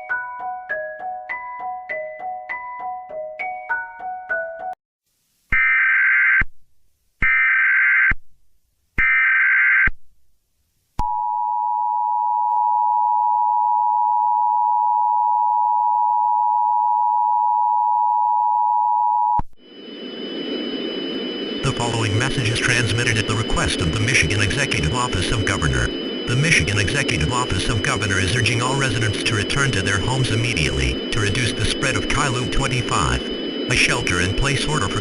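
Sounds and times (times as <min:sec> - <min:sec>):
screeching data tone bursts: 0:19.6 - 0:35.0
two-tone attention signal: 0:19.6 - 0:35.0.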